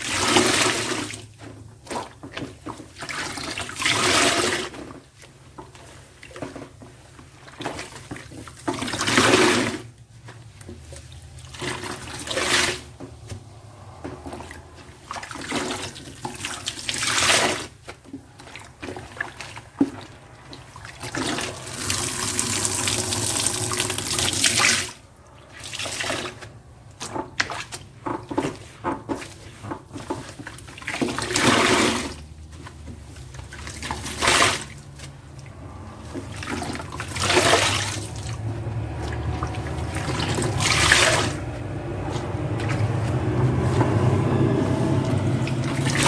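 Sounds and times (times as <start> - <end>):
sponge squeezed by hand: 0.0 - 46.0
water gushing out: 11.1 - 28.6, 33.2 - 46.0.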